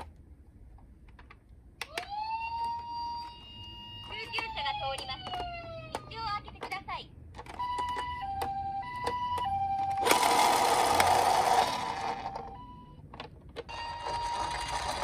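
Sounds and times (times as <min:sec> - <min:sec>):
toy two-tone siren: 0:01.9 - 0:06.1, 0:07.5 - 0:13.0, 0:13.7 - 0:15.0.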